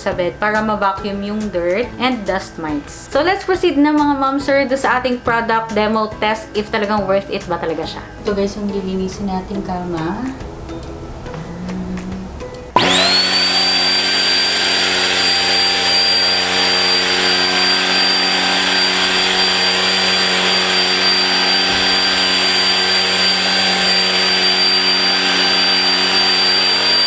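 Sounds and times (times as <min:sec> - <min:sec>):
handheld vacuum motor whining: 0:11.6 - 0:27.0.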